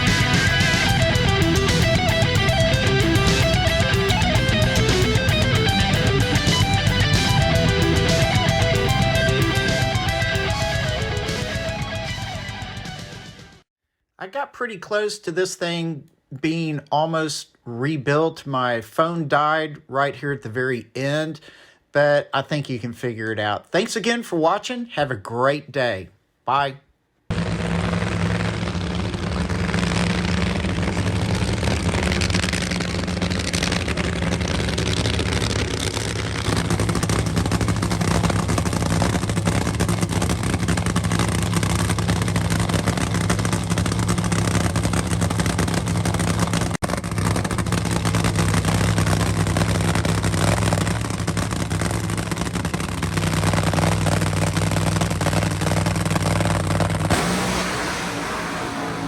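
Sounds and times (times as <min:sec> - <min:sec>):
large engine idling: 0:00.0 - 0:13.7, 0:27.3 - 0:59.0.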